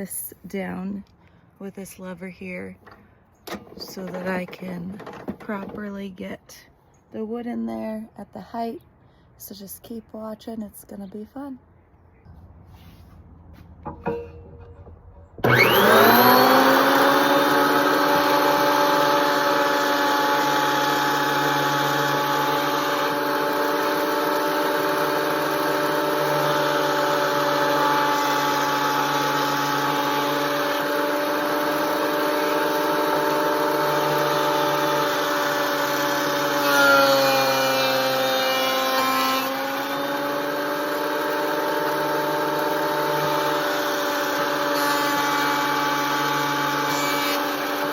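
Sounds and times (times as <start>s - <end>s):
board feeding through cutter: 15.4s - 47.9s
planer motor whining: 15.4s - 47.9s.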